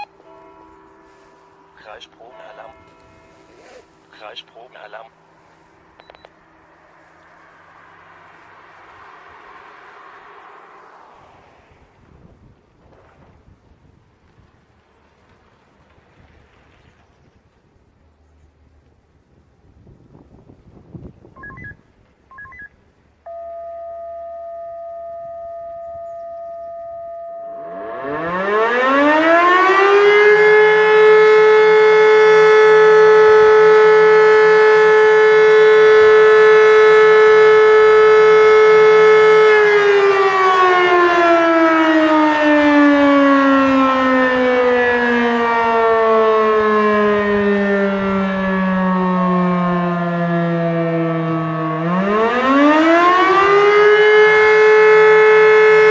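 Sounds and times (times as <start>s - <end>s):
steady electronic tone: 5.1s - 12.4s, 21.4s - 28.8s
siren winding up and down: 7.0s - 12.0s, 21.4s - 55.9s.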